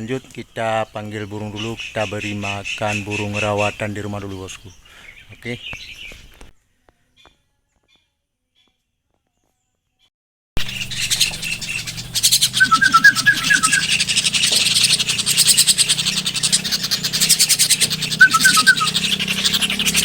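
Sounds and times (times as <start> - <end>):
birds chirping and chattering: 0.0 - 6.4, 10.6 - 20.0
whistled bird notes: 10.6 - 20.0.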